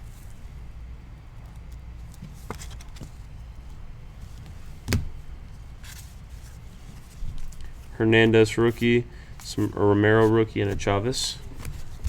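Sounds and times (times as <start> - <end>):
soft rustle: 0.0 - 12.0
trading cards being handled: 4.4 - 12.0.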